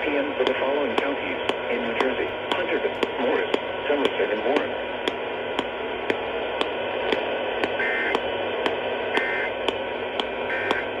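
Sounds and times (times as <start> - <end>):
radio static hiss with clicks: 0.0 - 11.0
raspy alert data tones: 9.2 - 9.5.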